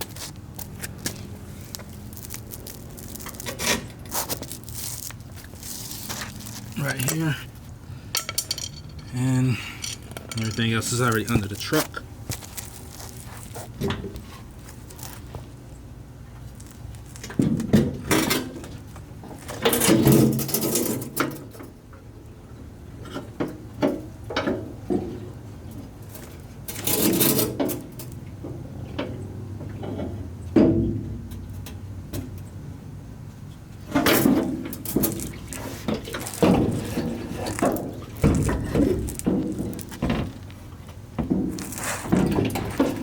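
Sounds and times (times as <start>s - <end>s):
low steady hum: 0.0s - 19.8s
clinks and clanks of metal tools: 8.0s - 12.7s.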